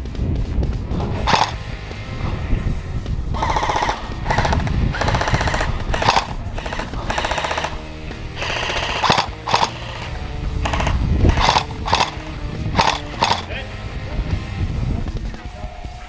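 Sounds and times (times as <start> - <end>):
airsoft guns rapid-fire bursts: 1.3 - 1.6, 3.4 - 13.6.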